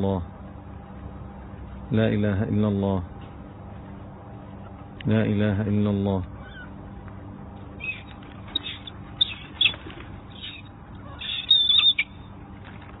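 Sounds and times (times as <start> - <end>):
pigeons flapping wings: 9.6 - 10.2, 12.5 - 13.0.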